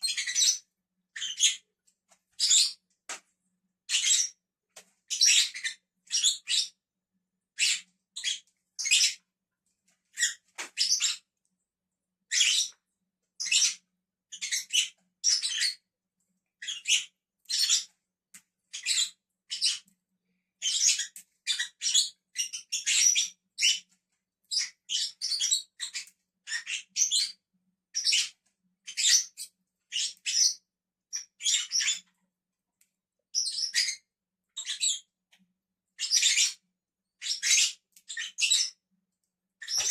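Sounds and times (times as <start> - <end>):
lovebirds chirping: 0.0 - 1.7, 5.1 - 6.8, 10.2 - 11.3, 13.4 - 15.8, 20.6 - 23.9, 28.0 - 32.0, 33.4 - 35.1, 37.2 - 38.8, 39.6 - 39.9.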